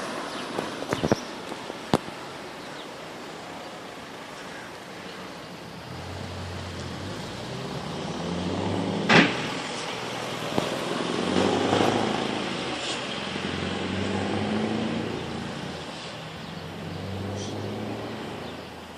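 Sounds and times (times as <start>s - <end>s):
diesel truck pulling away: 0.0s - 18.9s
sharp crack: 8.9s - 13.3s.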